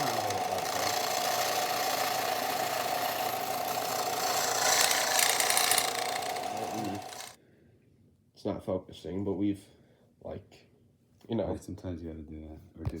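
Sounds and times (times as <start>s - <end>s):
electric grinder grinding steel: 0.0s - 7.4s.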